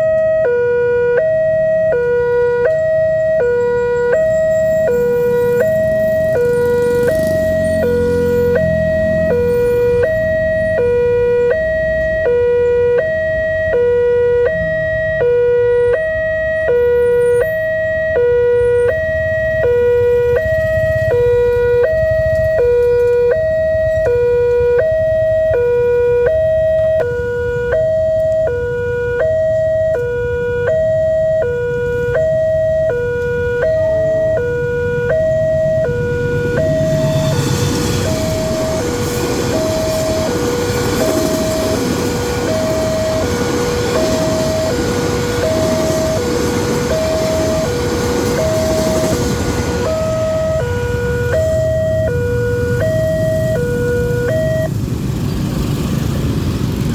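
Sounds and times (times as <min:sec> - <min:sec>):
level crossing two-tone alarm: 0:00.0 - 0:54.8
approaching train rushing: 0:35.6 - 0:53.5.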